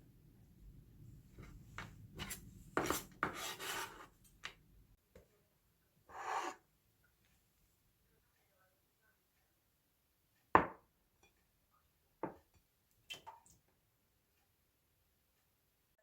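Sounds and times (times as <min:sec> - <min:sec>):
kitchen items knocking on hard surface: 0:10.6 - 0:10.8.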